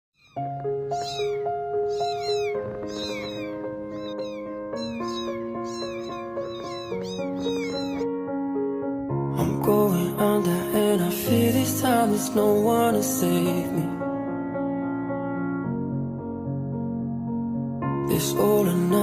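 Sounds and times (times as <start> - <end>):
kitten mewing: 0.2 - 8.1.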